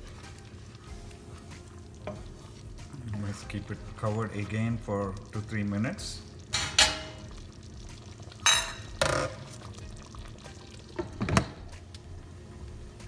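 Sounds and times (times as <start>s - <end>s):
curry simmering: 0.0s - 13.0s
metal clinks on pan and lid: 6.5s - 7.3s, 8.4s - 9.4s.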